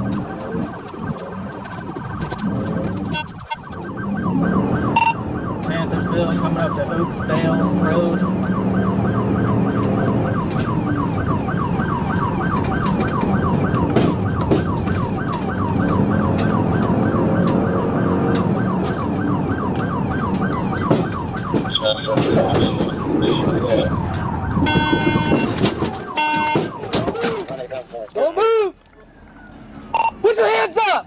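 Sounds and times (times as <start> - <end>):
police siren yelping: 0.0 - 27.6, 28.2 - 30.6
vehicle and road noise: 0.0 - 31.0
high electronic beeping: 29.9 - 30.2.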